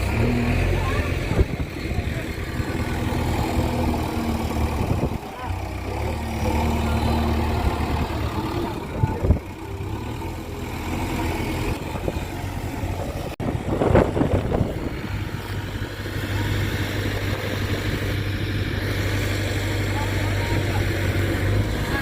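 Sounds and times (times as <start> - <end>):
diesel engine running: 0.0 - 22.0.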